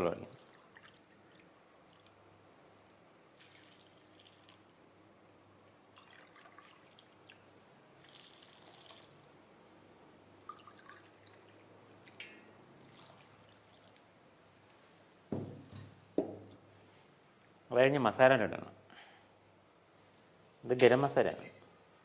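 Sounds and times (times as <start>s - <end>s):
water pouring and dripping: 10.4s - 14.1s.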